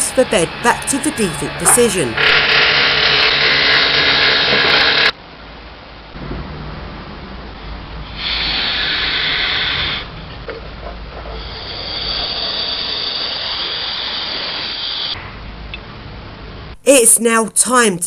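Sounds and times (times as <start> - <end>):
bed motor hum: 0.0 - 5.1, 6.0 - 16.6
hissing: 8.2 - 10.2, 11.4 - 15.2.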